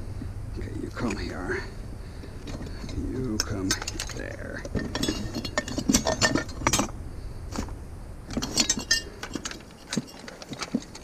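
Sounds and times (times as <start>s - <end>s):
glass and metal items clinking: 2.5s - 6.9s, 8.3s - 11.0s.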